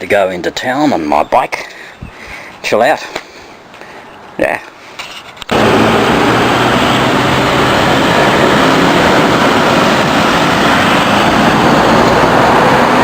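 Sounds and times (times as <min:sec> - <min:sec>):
wind noise on microphone: 0:02.0 - 0:02.4, 0:05.5 - 0:13.0.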